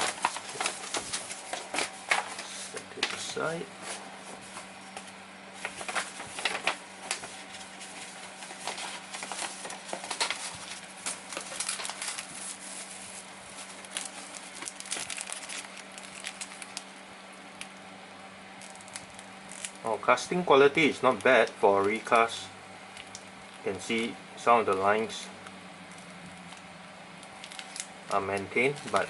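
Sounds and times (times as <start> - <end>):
plastic bags crinkling: 0.0 - 3.5, 5.6 - 17.7, 18.6 - 19.9, 22.9 - 24.0, 25.9 - 29.0.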